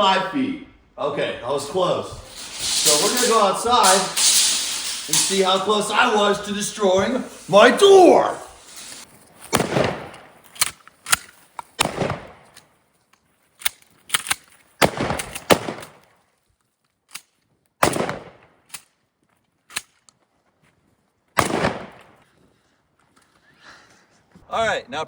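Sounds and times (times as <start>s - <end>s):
sharp bangs and clacks: 1.5s - 12.4s.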